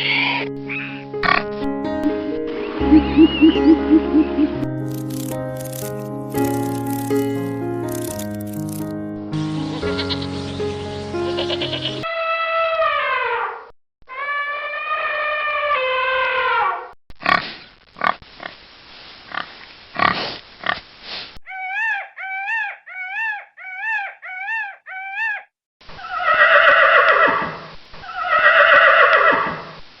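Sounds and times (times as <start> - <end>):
long loud animal cries: 11.3 - 16.9, 21.5 - 29.6
long pitched animal call: 14.1 - 16.8.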